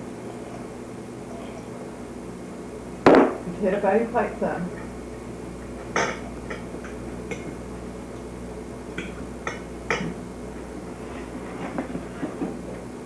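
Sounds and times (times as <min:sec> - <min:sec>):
steady low hum: 0:00.0 - 0:13.0
dishes and cutlery clinking: 0:05.8 - 0:07.6, 0:09.0 - 0:10.2.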